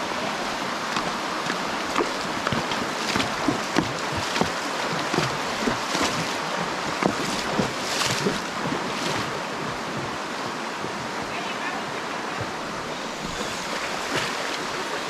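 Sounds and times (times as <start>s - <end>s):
rushing water: 0.0s - 15.0s
short splashes and knocks: 0.9s - 11.3s.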